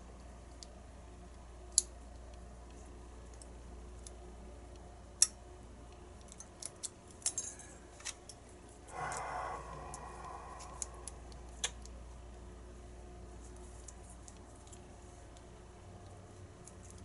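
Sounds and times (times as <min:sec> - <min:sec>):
small metal lock parts clicking: 0:05.2 - 0:08.4.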